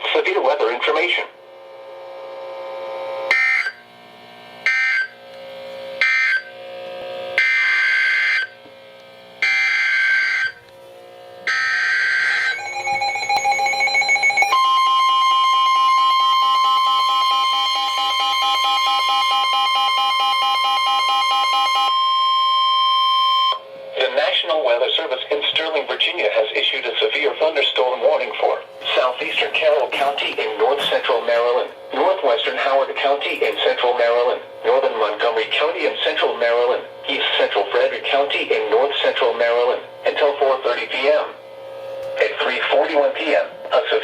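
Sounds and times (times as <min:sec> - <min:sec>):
steady warning alarm tone: 0:01.0 - 0:08.7, 0:09.3 - 0:43.9
warbling digital data bursts: 0:12.3 - 0:14.6.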